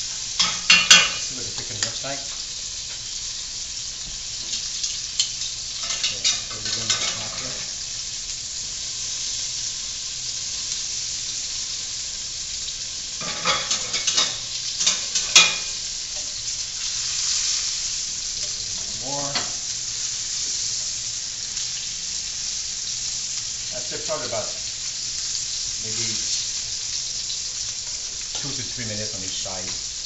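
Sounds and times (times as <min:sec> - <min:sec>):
chicken sizzling in a frying pan: 0:00.0 - 0:30.0.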